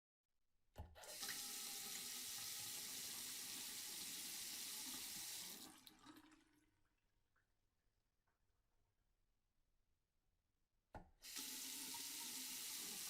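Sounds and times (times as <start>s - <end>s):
tap running while washing hands: 1.0s - 6.4s, 11.2s - 13.0s.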